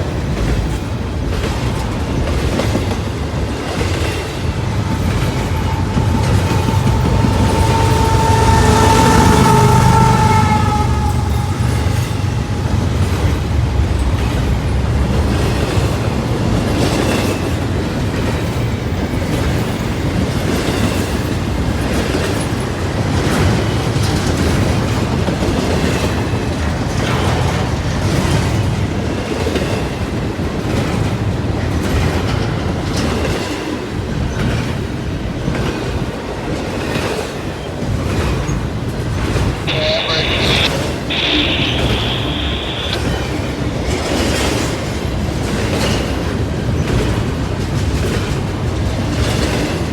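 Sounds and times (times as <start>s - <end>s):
train rumble: 0.0s - 49.9s.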